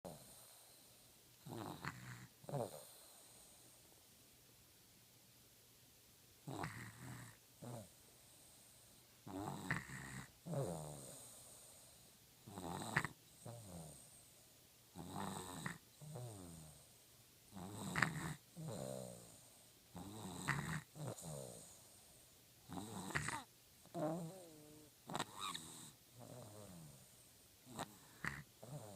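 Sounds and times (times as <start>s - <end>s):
person snoring: 1.5s - 3.1s, 9.3s - 11.4s, 22.7s - 27.0s, 27.7s - 28.9s.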